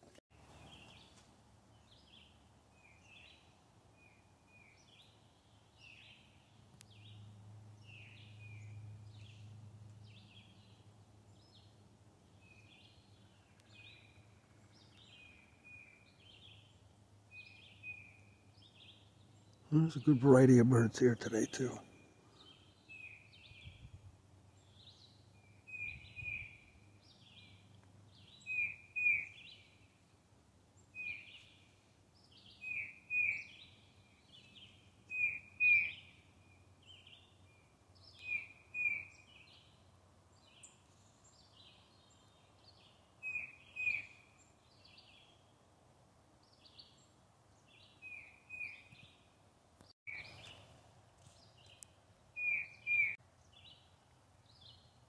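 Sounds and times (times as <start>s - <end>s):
faint bird chirps: 28.3s - 29.8s, 30.9s - 39.8s, 40.4s - 45.4s, 51.3s - 55.0s.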